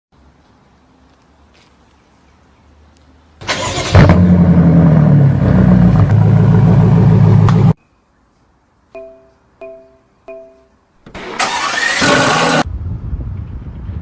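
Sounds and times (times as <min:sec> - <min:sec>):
car starter cranking: 0:03.4 - 0:04.1, 0:11.1 - 0:12.6.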